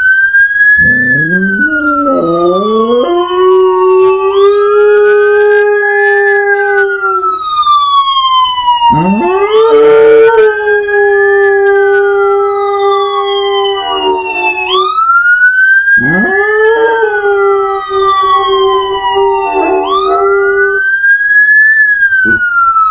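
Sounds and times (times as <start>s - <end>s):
wailing siren: 0.0s - 22.9s
dog howling: 0.8s - 7.4s, 8.8s - 14.9s, 16.0s - 20.8s.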